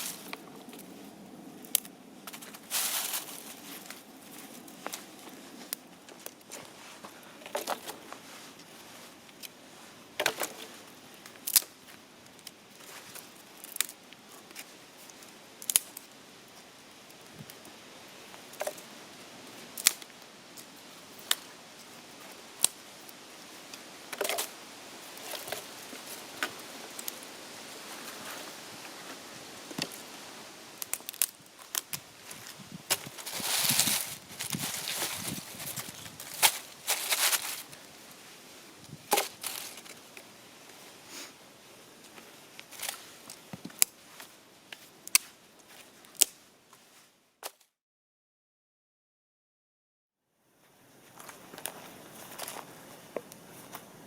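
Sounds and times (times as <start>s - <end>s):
faint hiss: 0.0s - 47.1s
wood fire crackling and popping: 10.2s - 18.9s, 19.5s - 38.2s, 42.0s - 44.0s, 45.0s - 46.4s.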